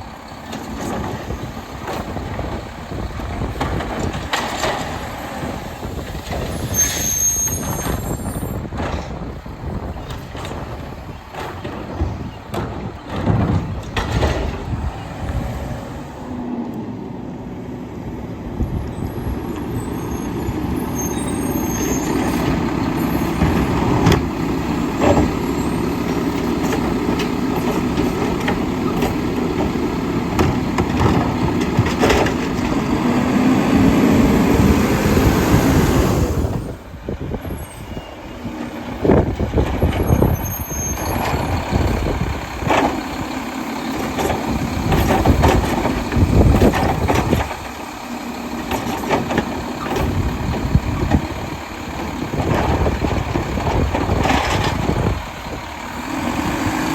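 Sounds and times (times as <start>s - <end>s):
wind rumbling on microphone: 0.0s - 16.4s, 18.2s - 21.0s, 22.1s - 47.8s, 48.7s - 56.9s
knocks and clanks: 0.4s - 6.6s, 10.0s - 15.0s, 22.0s - 33.0s, 41.0s - 43.3s, 43.9s - 47.8s, 48.6s - 51.4s
garbage truck engine revving: 18.4s - 56.9s.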